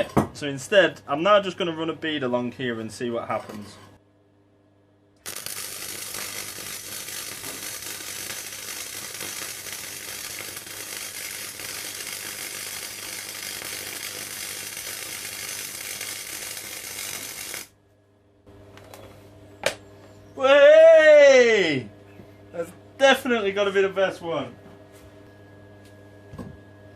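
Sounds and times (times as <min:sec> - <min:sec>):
welding arc crackling: 0:05.2 - 0:17.8.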